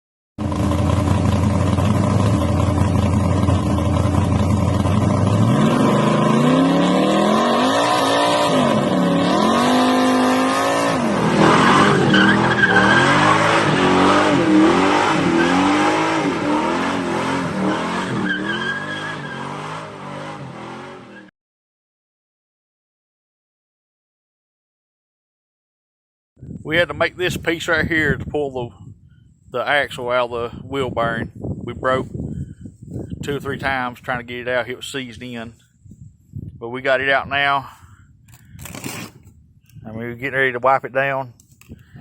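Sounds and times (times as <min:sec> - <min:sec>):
car engine revving: 0:00.4 - 0:21.2
tyre squeal: 0:11.4 - 0:13.9, 0:17.9 - 0:19.8.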